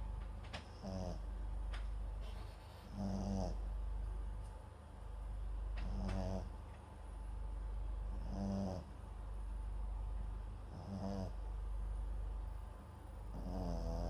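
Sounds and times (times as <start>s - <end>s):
dog snoring: 0.6s - 1.3s, 2.3s - 3.8s, 5.8s - 6.6s, 8.1s - 9.0s, 10.6s - 11.6s, 13.3s - 14.0s.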